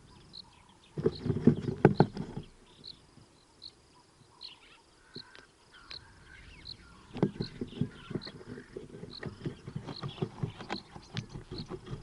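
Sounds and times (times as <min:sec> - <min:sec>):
bird chirping: 0:00.0 - 0:12.0
squirrel scratching on microphone: 0:07.1 - 0:12.0.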